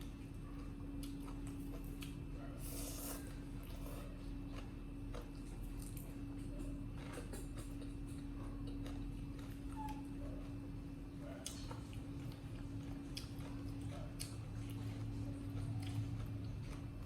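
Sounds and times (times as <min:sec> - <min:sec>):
monkeys eating clicks and rustles: 0:03.2 - 0:10.6, 0:11.2 - 0:17.0.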